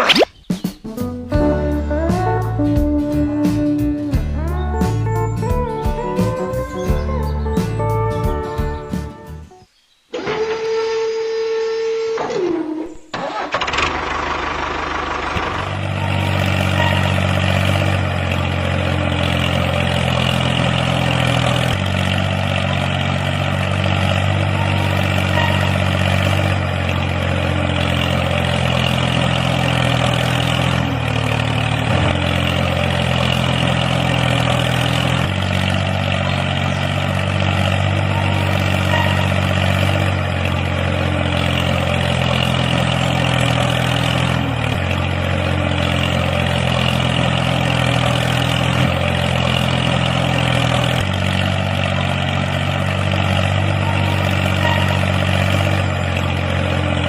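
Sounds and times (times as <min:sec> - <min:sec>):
tractor engine starting and running: 0:00.0 - 0:57.0.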